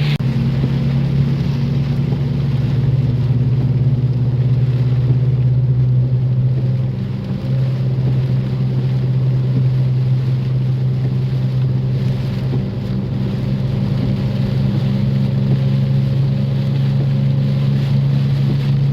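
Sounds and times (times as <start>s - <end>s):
heavy rain hissing: 0.0s - 2.9s
engine and road drone: 0.0s - 18.9s
wind: 0.0s - 18.9s.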